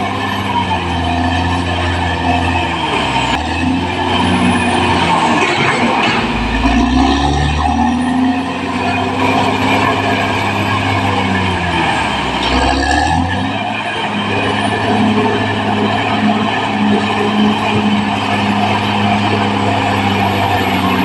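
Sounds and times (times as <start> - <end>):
bulldozer diesel engine droning: 0.0 - 21.0.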